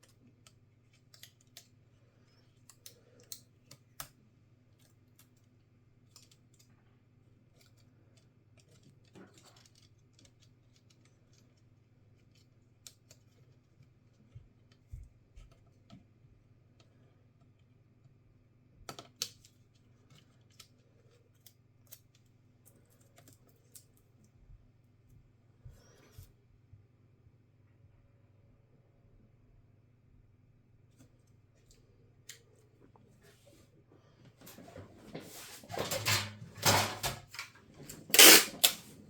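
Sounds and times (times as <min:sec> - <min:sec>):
small parts clicking and tapping: 0:00.0 - 0:04.2, 0:04.8 - 0:06.7, 0:07.5 - 0:16.0, 0:38.1 - 0:38.8.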